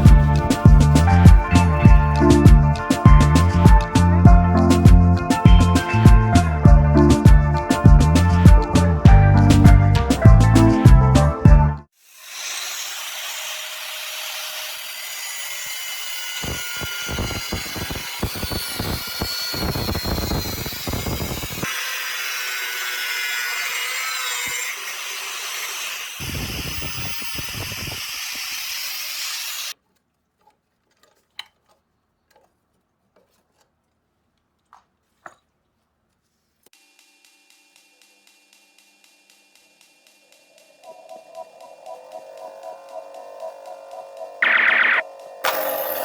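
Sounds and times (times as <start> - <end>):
power tool grinding steel: 0.0 - 8.9, 12.0 - 29.8, 40.5 - 46.0.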